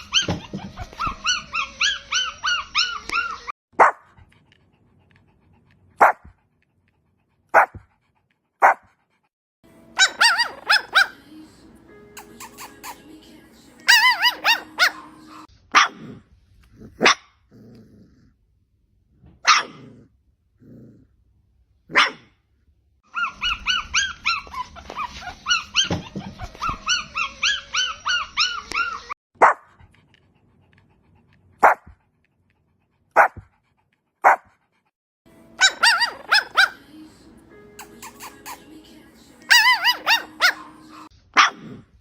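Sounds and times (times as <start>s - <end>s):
dog yelping high-pitched: 0.0s - 4.0s, 10.0s - 11.2s, 13.9s - 16.0s, 19.4s - 19.8s, 23.1s - 29.6s, 35.6s - 36.8s, 39.5s - 41.7s
dogs barking: 0.0s - 4.2s, 6.0s - 6.3s, 7.5s - 7.8s, 8.6s - 8.9s, 10.0s - 11.2s, 13.8s - 16.1s, 17.0s - 17.3s, 19.4s - 19.9s, 21.9s - 22.3s, 23.1s - 29.7s, 31.6s - 32.0s, 33.2s - 33.5s, 34.2s - 34.5s, 35.6s - 36.8s, 39.5s - 41.8s.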